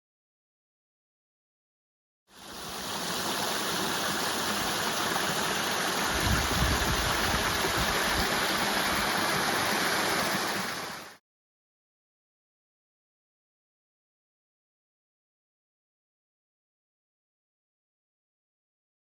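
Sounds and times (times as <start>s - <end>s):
water rushing: 2.3s - 11.2s.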